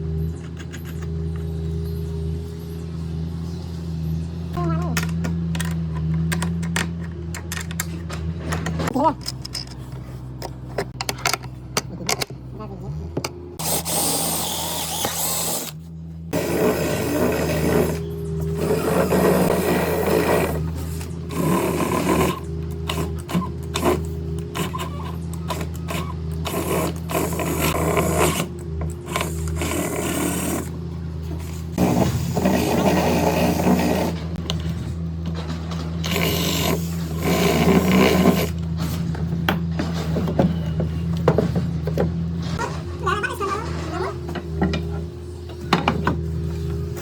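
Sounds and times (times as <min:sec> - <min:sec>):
machine motor humming: 0:13.1 - 0:47.0
power tool cutting wood: 0:13.6 - 0:30.8, 0:31.8 - 0:34.4, 0:36.0 - 0:38.6.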